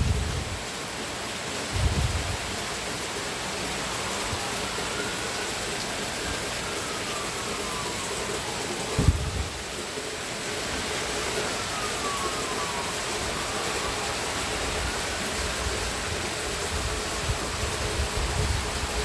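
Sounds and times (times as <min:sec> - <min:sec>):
heavy rain: 0:00.0 - 0:19.0
faint siren: 0:03.7 - 0:16.5.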